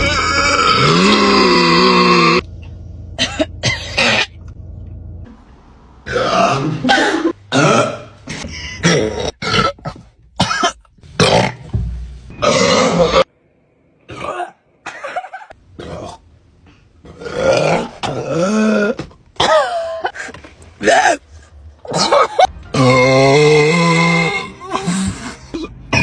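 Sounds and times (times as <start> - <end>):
person burping: 0.5 - 2.4, 6.1 - 11.6, 12.4 - 13.3, 14.1 - 14.6, 21.9 - 26.0.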